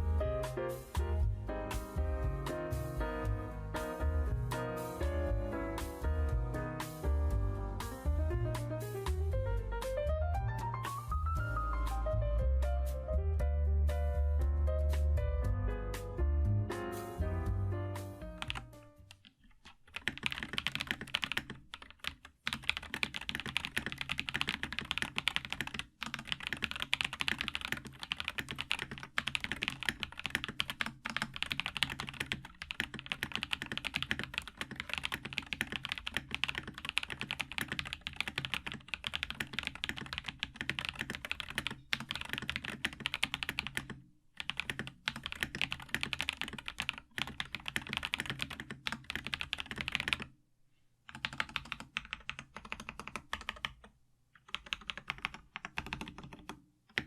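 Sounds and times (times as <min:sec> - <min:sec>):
fast mechanical keyboard typing: 0:18.4 - 0:18.7, 0:19.7 - 0:50.3, 0:51.1 - 0:57.0.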